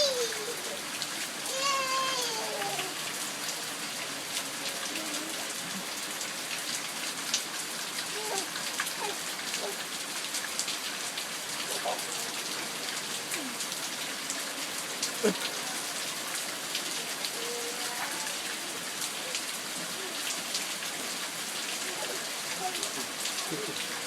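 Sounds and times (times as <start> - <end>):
sharp ticks of raindrops: 0.0 - 24.0
steady rain hiss: 0.0 - 24.0.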